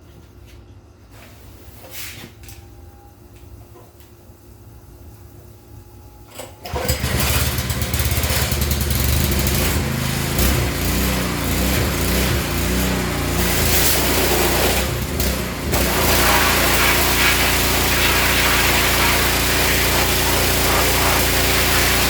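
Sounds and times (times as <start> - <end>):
small engine running: 6.7 - 22.0.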